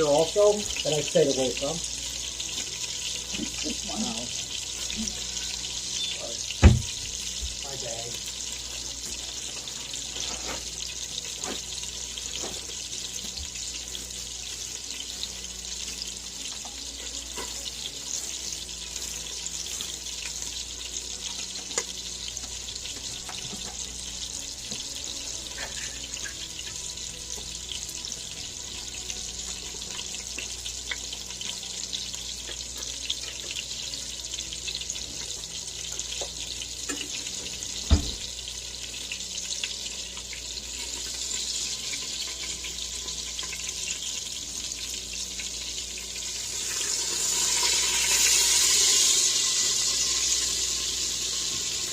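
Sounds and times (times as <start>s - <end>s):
kitchen cooking hiss: 0.0s - 51.9s.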